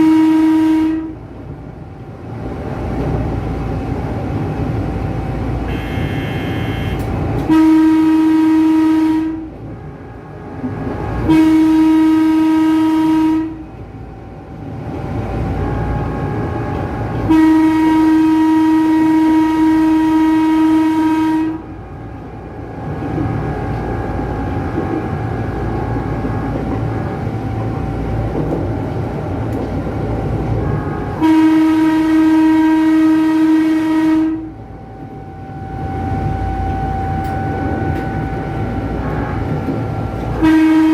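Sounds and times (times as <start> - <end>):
electric train horn blasts: 0.0 - 1.2, 5.6 - 13.7, 15.5 - 22.2, 30.5 - 40.9
train running rumble: 0.0 - 40.9.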